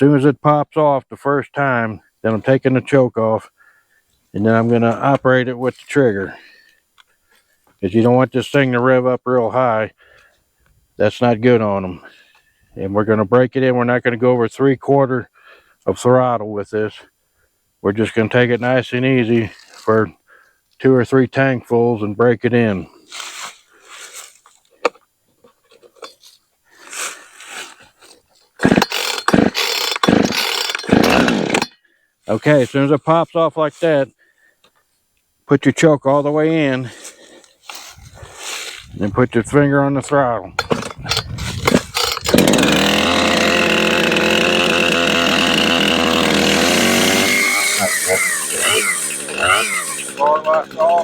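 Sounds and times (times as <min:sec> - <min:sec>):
faint handling noise: 0:23.2 - 0:28.6
chainsaw engine sputtering: 0:26.9 - 0:31.8, 0:40.5 - 0:51.0.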